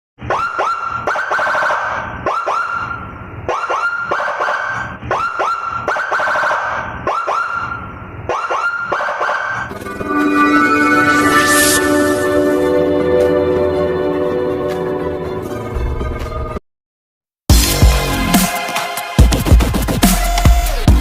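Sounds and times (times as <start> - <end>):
music: 9.7 - 16.6, 17.5 - 21.0.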